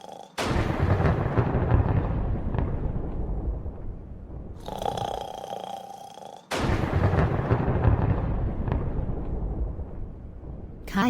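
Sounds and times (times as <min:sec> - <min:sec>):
thunder rumbling and clapping: 0:00.4 - 0:04.6, 0:06.6 - 0:10.9.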